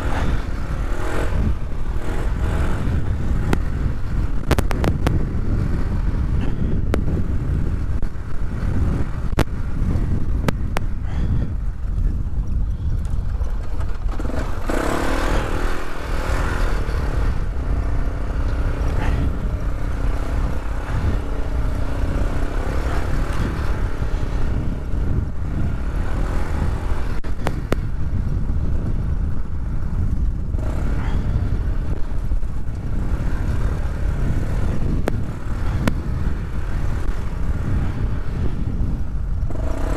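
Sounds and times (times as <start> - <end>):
all-terrain vehicle engine running: 0.0 - 39.9
scattered clicks: 3.5 - 5.2.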